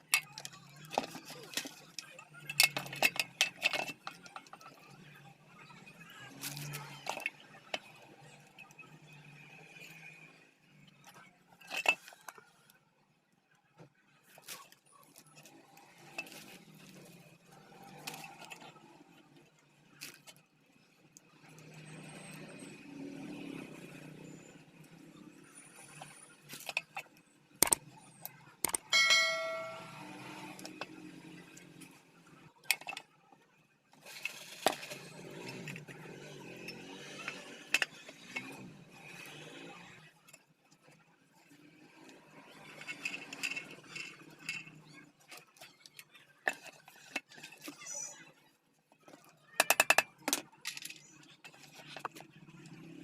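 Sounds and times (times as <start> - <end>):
metal tools clicking and knocking: 0.0 - 4.9, 6.5 - 7.9, 11.6 - 12.4, 26.0 - 27.9, 28.6 - 30.9, 32.6 - 33.1, 49.2 - 52.3
ringing metal clang: 28.8 - 30.4.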